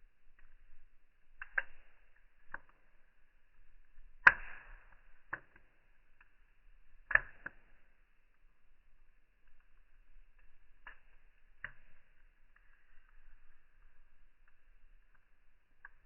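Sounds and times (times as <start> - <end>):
wood fire popping: 0.0 - 16.0.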